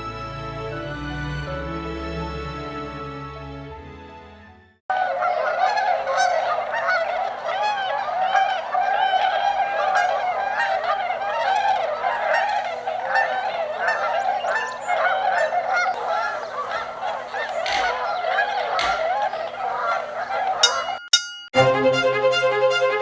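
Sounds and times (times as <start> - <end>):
flock of swans calling: 4.9 - 21.2.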